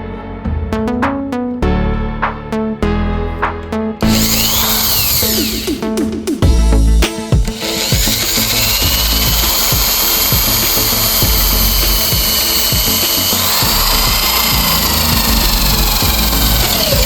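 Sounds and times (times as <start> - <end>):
background music: 0.0 - 17.0
electric drill whining: 4.0 - 6.0, 7.4 - 17.0.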